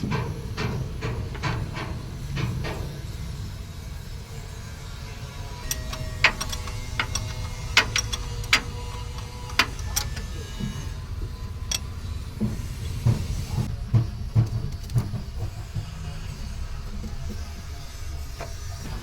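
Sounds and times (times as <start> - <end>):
hand tools clinking on metal: 5.6 - 12.5
dull thumps: 6.2 - 17.7.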